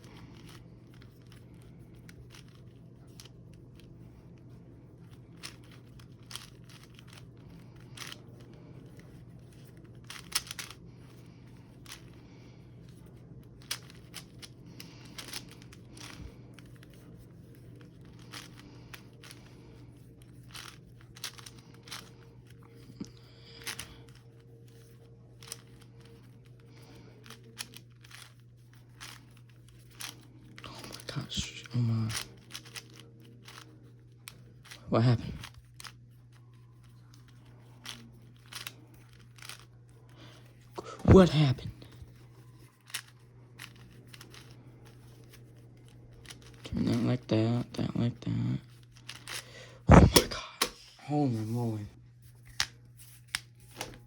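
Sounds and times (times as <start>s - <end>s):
steady low hum: 0.0s - 54.0s
plastic puzzle cube clicking: 5.4s - 8.2s, 8.9s - 10.8s, 13.6s - 16.9s, 20.4s - 22.2s, 25.4s - 25.8s, 27.2s - 28.3s, 32.1s - 33.7s, 37.8s - 39.7s, 42.9s - 44.6s.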